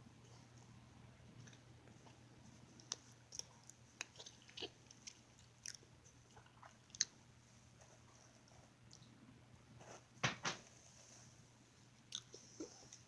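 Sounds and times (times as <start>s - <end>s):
steady low hum: 0.0s - 13.0s
chewing a sandwich: 1.4s - 7.2s.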